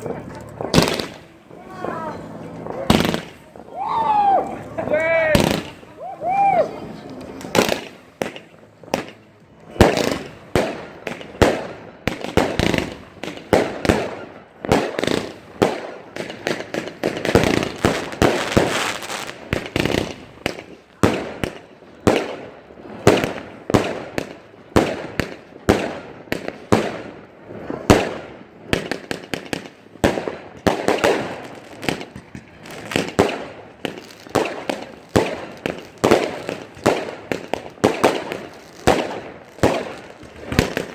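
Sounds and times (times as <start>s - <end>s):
dense firework crackling: 0.0s - 40.9s
fireworks bangs and pops: 0.0s - 40.9s.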